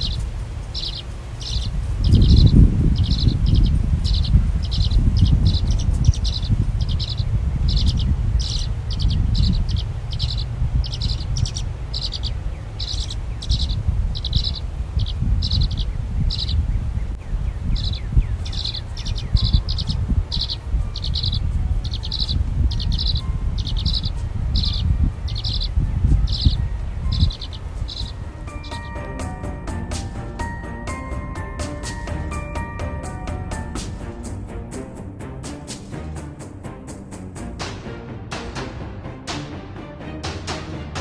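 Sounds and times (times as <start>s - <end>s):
steady low rumble: 0.0s - 17.6s
bird chirping: 0.0s - 34.6s.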